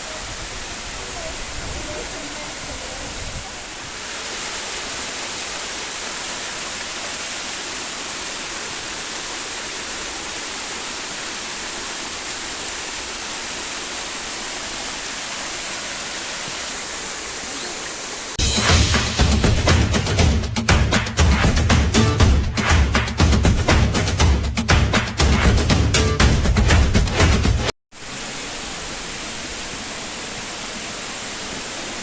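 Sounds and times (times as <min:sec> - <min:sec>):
waterfall rushing: 0:00.0 - 0:19.8, 0:28.0 - 0:32.0.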